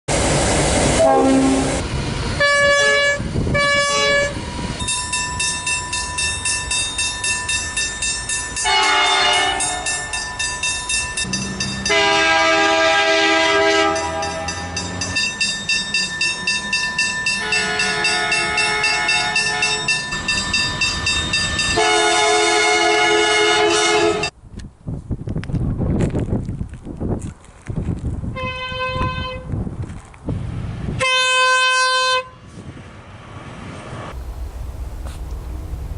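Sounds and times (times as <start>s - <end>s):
rail cars rumbling: 0.1s - 24.4s, 28.3s - 35.9s
train horn blasts: 1.0s - 1.8s, 2.4s - 4.4s, 8.6s - 10.0s, 11.8s - 14.8s, 17.4s - 19.9s, 21.6s - 24.3s, 28.4s - 29.5s, 31.0s - 32.4s
wheel clatter: 34.1s - 35.9s.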